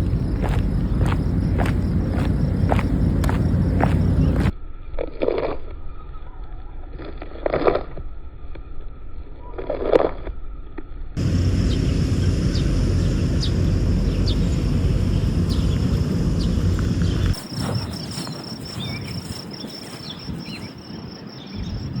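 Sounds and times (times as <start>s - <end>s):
insects buzzing: 0.0s - 4.5s, 11.2s - 22.0s
soft footsteps: 0.0s - 4.5s, 16.7s - 21.0s
steady low rumble: 0.0s - 4.5s, 11.1s - 22.0s.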